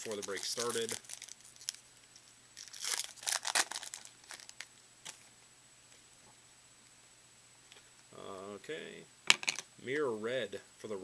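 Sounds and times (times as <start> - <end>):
wrapper crinkling and tearing: 0.0 - 4.7.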